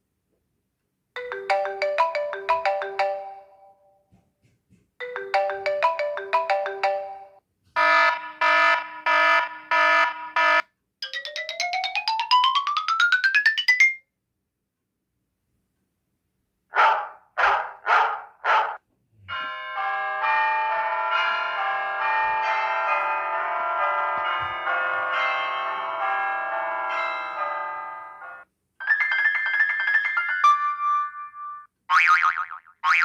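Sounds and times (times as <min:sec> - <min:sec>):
marimba ringtone melody: 0:01.2 - 0:03.8, 0:05.0 - 0:07.4, 0:11.0 - 0:14.0.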